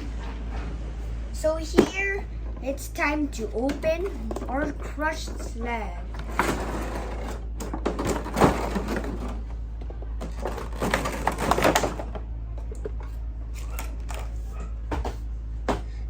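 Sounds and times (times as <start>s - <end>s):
cardboard and plastic packaging crackling: 10.2s - 12.1s.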